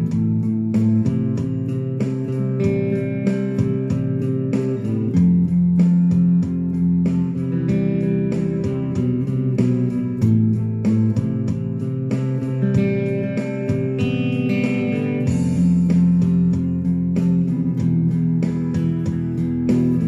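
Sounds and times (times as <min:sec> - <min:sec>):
low bass notes: 0:00.0 - 0:20.0
strummed guitar chords: 0:00.0 - 0:20.0.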